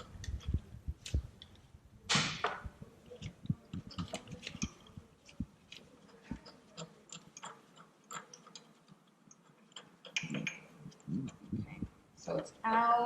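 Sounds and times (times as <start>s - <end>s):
socket ratchet clicking: 6.4s - 11.4s.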